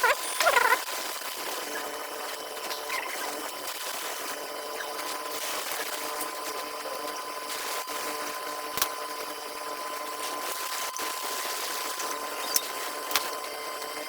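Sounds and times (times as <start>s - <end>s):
air pump motor running: 0.0s - 14.0s.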